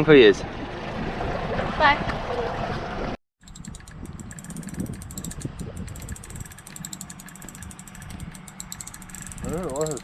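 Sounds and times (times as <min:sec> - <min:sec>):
fishing reel ratchet clicking: 0:03.4 - 0:10.0.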